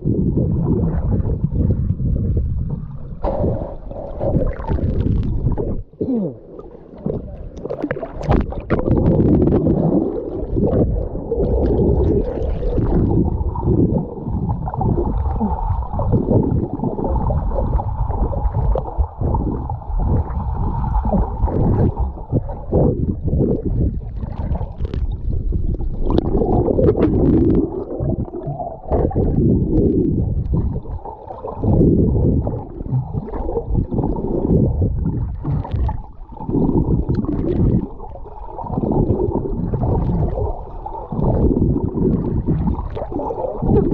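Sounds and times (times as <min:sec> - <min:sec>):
dense low noise: 0:00.0 - 0:31.0.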